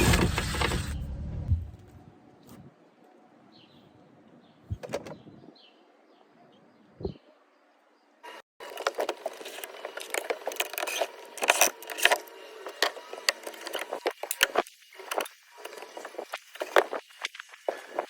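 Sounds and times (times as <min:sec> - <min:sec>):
tools chipping and scraping wood: 0:08.7 - 0:17.0.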